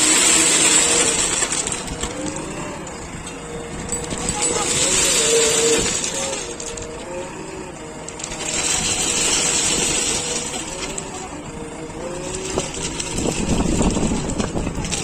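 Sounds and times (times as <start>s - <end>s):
backhoe engine whine: 0.0s - 15.0s
rushing scraping noise: 0.0s - 15.0s.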